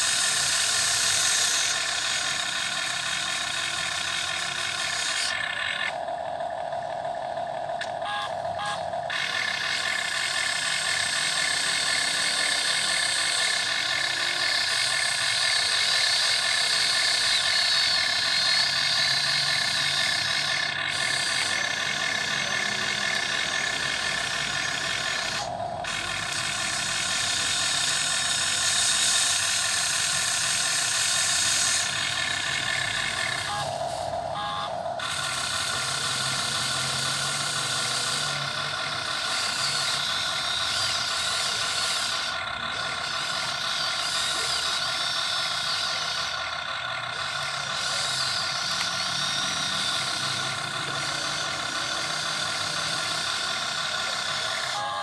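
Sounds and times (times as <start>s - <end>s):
model excavator motors whining: 0.0s - 55.0s.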